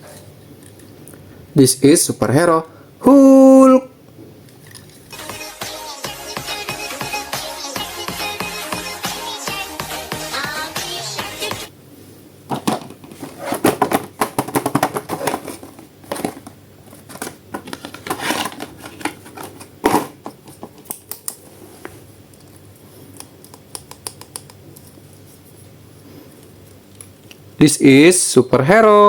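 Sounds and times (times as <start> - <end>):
plastic packaging handled: 12.5 - 20.8.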